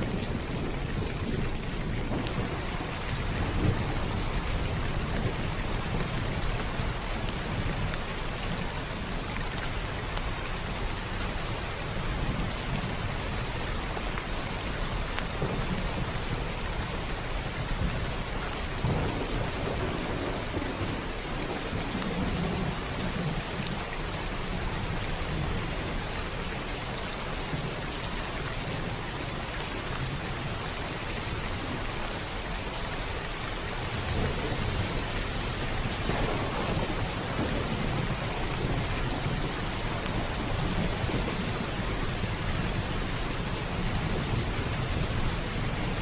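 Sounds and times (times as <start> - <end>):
rolling thunder: 0.0 - 9.2, 14.9 - 26.1, 33.9 - 46.0
heavy rain on a roof: 0.0 - 46.0.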